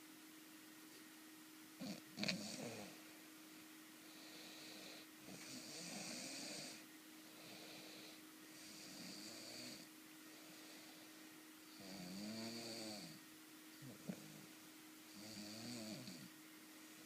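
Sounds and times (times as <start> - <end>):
faint steady hum: 0.0 - 17.0
person snoring: 1.8 - 3.0, 4.1 - 6.8, 7.4 - 9.9, 11.7 - 13.2, 15.1 - 16.3.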